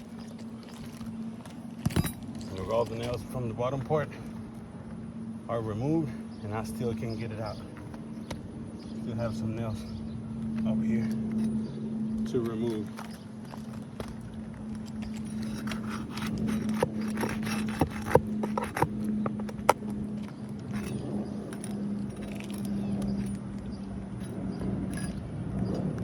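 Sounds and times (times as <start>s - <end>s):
pry bar scraping under shingles: 0.0s - 4.7s, 10.6s - 26.0s
steady low hum: 0.0s - 26.0s.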